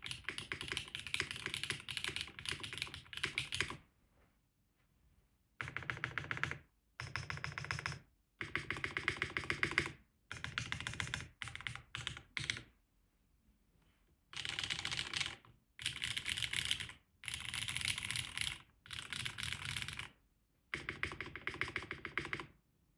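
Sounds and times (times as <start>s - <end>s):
mechanical keyboard clacking: 0.0s - 3.8s, 5.6s - 12.6s, 14.4s - 20.1s, 20.8s - 22.5s.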